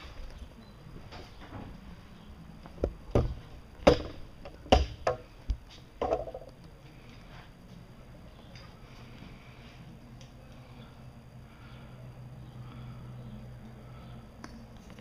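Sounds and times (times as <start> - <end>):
hard objects knocking and clicking: 2.8 - 6.5.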